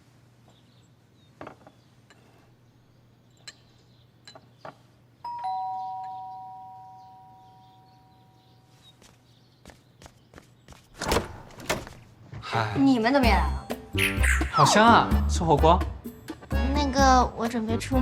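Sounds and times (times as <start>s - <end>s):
two-note doorbell chime: 5.2s - 8.4s.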